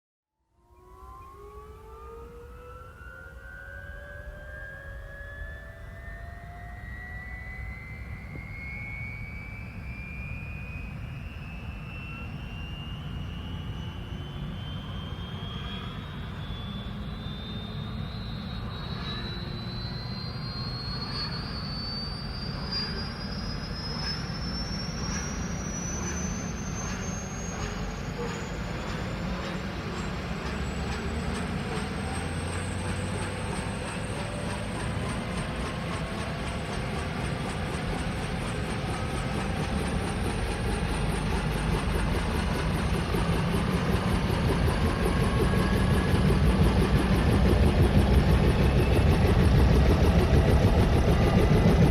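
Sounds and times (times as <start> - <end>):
helicopter turbine whine: 0.5 - 51.9.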